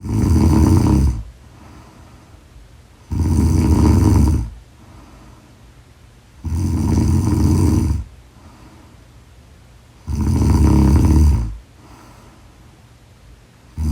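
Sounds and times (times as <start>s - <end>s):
woman snoring loudly: 0.0s - 1.3s, 3.1s - 4.6s, 6.4s - 8.1s, 10.0s - 11.6s.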